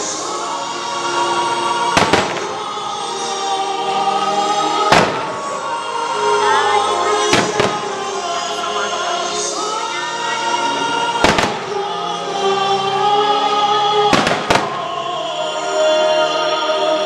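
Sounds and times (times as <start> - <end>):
choral music: 0.0 - 17.0
fireworks bangs: 1.9 - 2.8, 4.8 - 5.8, 7.2 - 8.2, 11.2 - 12.0, 14.1 - 15.0.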